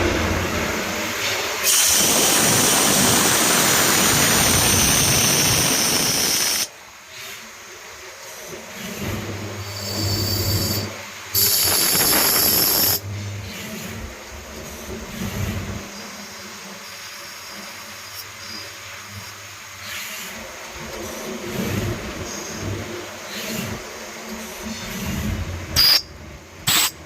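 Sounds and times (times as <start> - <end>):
high whine: 0.0 - 6.7, 9.0 - 19.4
loud air hissing: 0.0 - 6.7, 9.6 - 13.0, 26.6 - 27.0
steady motor hum: 0.0 - 27.0.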